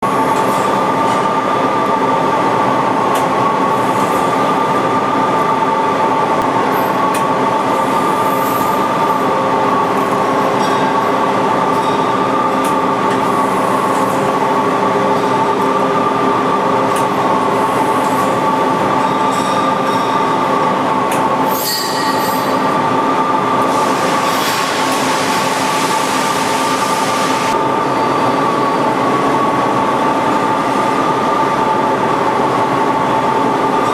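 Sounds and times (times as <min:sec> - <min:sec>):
mechanical hum: 0:00.0 - 0:33.9
lathe high whine: 0:21.4 - 0:29.2
hiss: 0:23.7 - 0:27.5.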